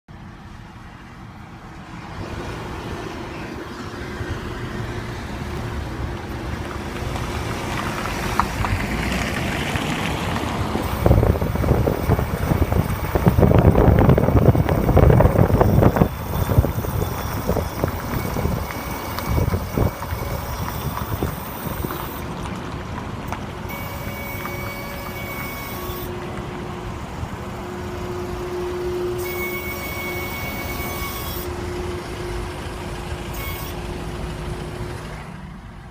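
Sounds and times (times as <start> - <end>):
road and wind noise: 0.1 - 35.9
brake pads squeaking: 10.4 - 35.2.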